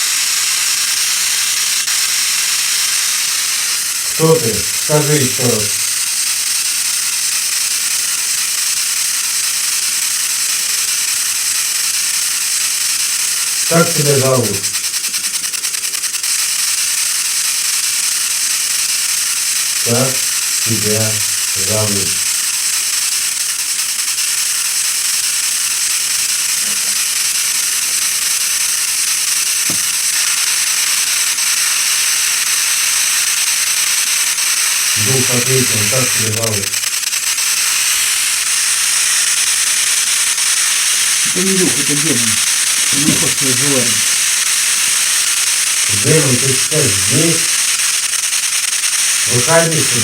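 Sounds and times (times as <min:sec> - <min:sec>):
loud electronic static hiss: 0:00.0 - 0:50.0
faint rapid clicking: 0:25.9 - 0:50.0.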